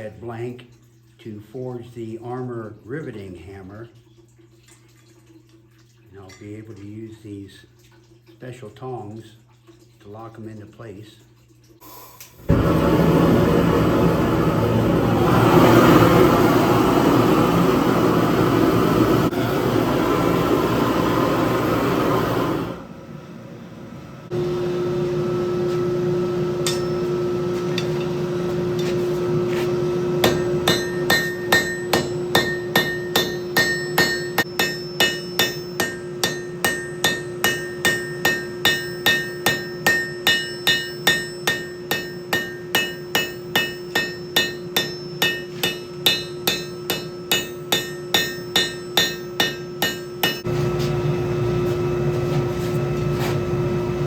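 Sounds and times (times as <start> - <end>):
steady hum: 12.4 - 54.0
hammer striking hot steel: 26.6 - 50.6.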